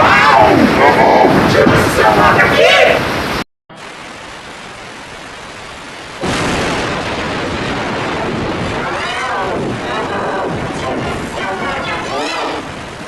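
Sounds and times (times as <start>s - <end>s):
rain hissing: 0.0s - 13.0s
thunder crash and rumble: 6.2s - 13.0s.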